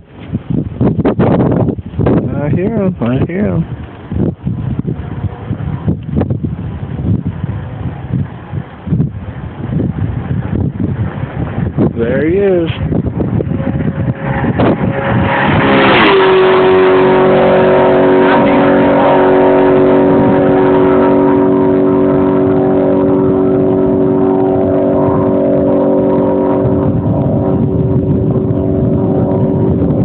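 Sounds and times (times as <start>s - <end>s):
steady engine drone: 0.0s - 30.0s
car engine revving and passing: 12.9s - 30.0s.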